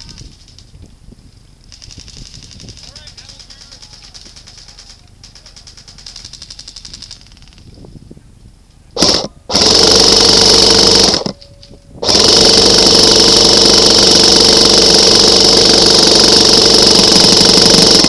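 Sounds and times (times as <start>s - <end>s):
airsoft rifle firing full auto: 9.0s - 11.4s, 12.0s - 18.0s.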